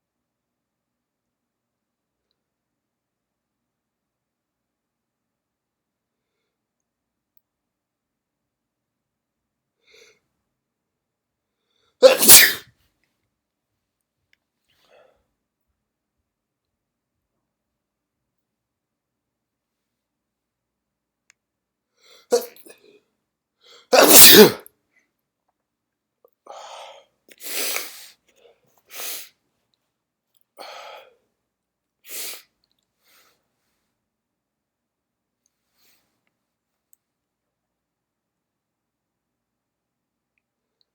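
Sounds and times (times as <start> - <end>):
person sneezing: 12.0 - 12.7, 22.3 - 22.8, 23.9 - 24.7.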